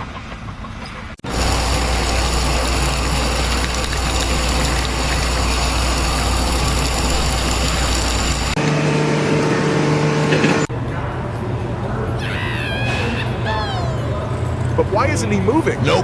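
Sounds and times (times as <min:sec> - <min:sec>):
heavy engine running: 0:01.2 - 0:10.7.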